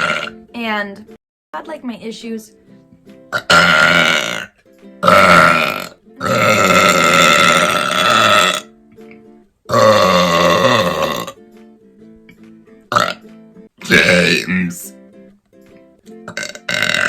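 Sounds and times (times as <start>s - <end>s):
woman burping loudly: 0.0s - 0.4s, 3.3s - 11.4s, 12.9s - 13.2s, 13.8s - 14.6s, 16.3s - 17.0s
soft background music: 0.0s - 17.0s.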